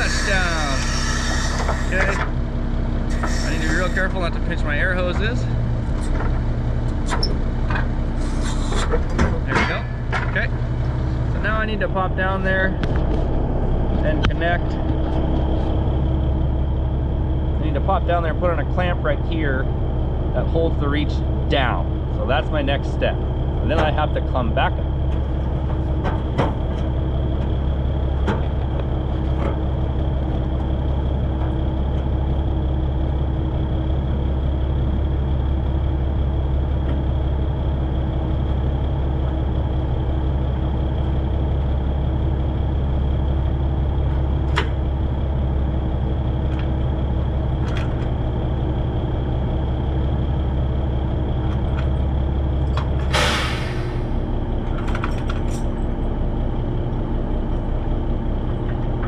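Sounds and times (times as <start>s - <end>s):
diesel truck engine idling: 0.0s - 59.0s
air brake hiss: 53.0s - 54.2s.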